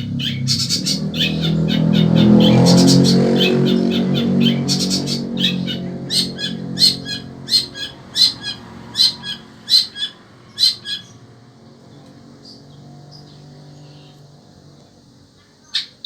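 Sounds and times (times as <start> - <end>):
shrike calling in sharp notes: 0.0 - 11.2.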